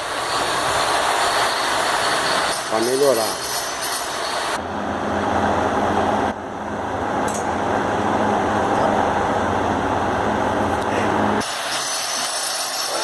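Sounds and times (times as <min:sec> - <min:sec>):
exhaust fan air rush: 0:04.4 - 0:11.8
low motor hum: 0:04.6 - 0:11.4.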